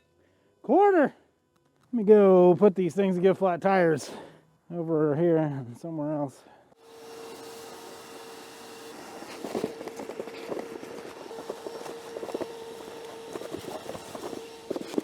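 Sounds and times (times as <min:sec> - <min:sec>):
footsteps walking: 0:08.9 - 0:15.0.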